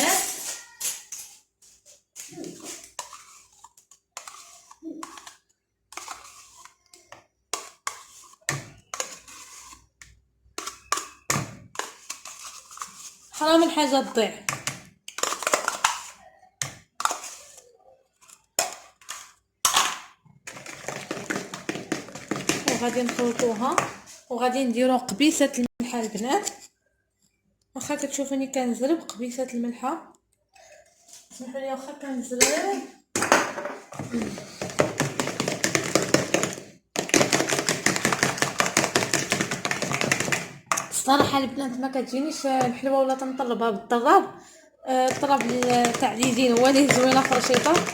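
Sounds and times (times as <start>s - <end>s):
spoon scraping: 0.0s - 13.8s, 20.5s - 24.3s, 44.9s - 47.9s
whisk clicking against bowl: 45.0s - 47.9s.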